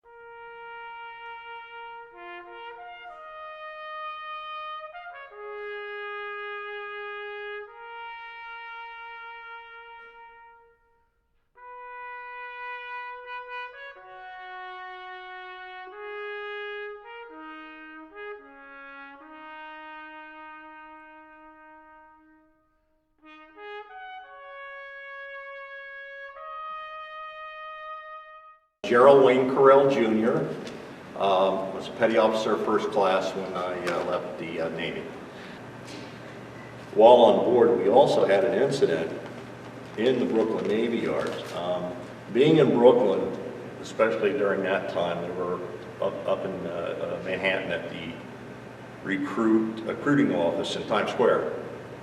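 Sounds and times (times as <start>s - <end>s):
slow brass music with trumpet: 0.0s - 52.0s.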